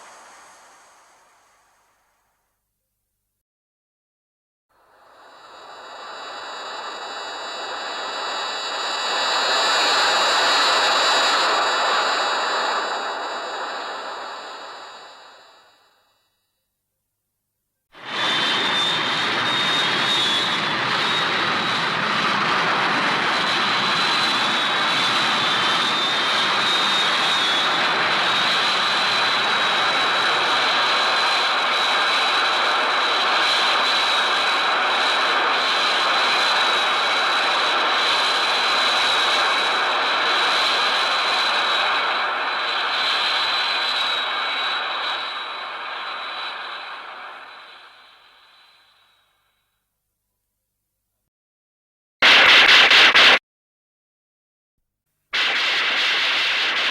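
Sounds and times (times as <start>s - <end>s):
jet-like rushing roar: 0.0s - 2.1s, 5.3s - 15.4s, 18.0s - 49.1s, 52.2s - 53.4s, 55.4s - 56.9s
high steady whine: 0.0s - 2.4s, 4.9s - 16.6s, 52.2s - 53.4s, 55.4s - 56.9s.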